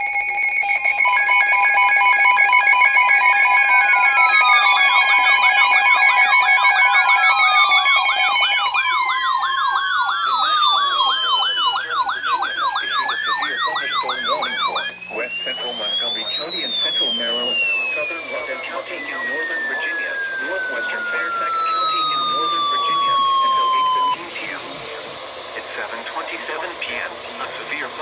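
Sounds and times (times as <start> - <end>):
pulsing electronic beep tones: 0.0 - 25.4
warbling siren tones: 0.0 - 28.0.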